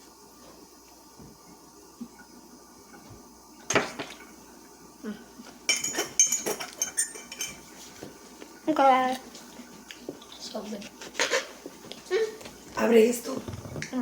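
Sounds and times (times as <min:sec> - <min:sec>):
dishes and cutlery clinking: 0:05.7 - 0:08.1.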